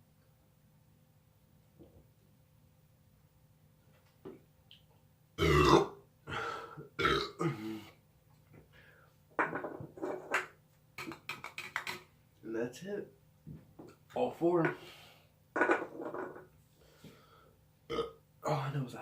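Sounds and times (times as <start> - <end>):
man belching: 5.4 - 6.0, 7.0 - 7.8, 17.9 - 18.2.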